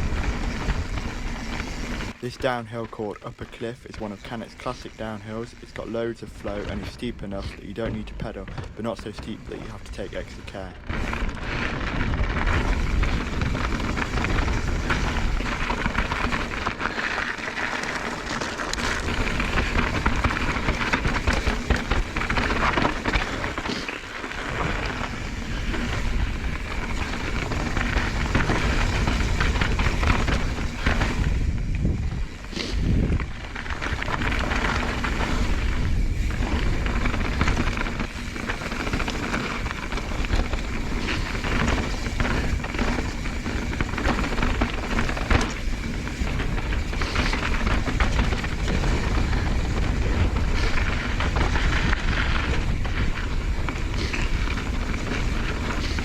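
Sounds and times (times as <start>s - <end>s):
bike rattling: 0.0s - 56.0s
tyres crunching over dirt: 0.0s - 56.0s
wind on microphone: 24.9s - 38.3s.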